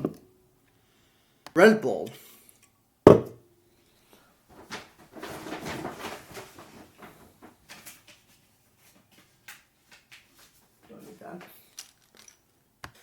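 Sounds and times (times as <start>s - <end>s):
drink can set down: 3.1s - 3.4s.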